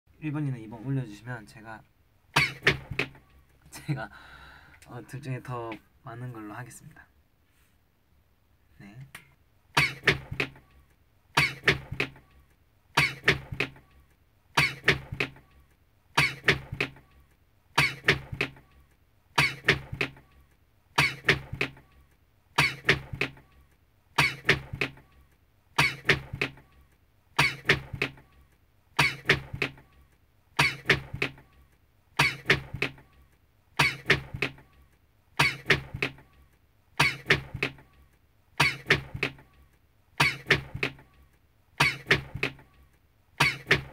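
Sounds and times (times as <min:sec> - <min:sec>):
quick sharp hits: 0:11.4 - 0:12.2, 0:13.0 - 0:13.7, 0:14.6 - 0:15.4, 0:16.2 - 0:17.0, 0:38.6 - 0:39.4, 0:40.2 - 0:40.9, 0:41.8 - 0:42.6, 0:43.4 - 0:43.9.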